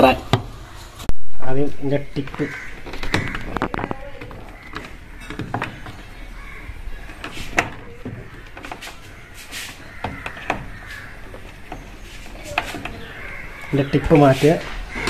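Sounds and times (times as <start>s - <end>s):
tool knocking on plastic: 9.9s - 11.0s.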